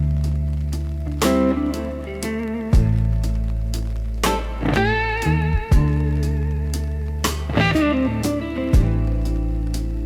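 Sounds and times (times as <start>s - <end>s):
blues guitar notes: 0.0s - 10.0s
held bass: 0.0s - 10.0s.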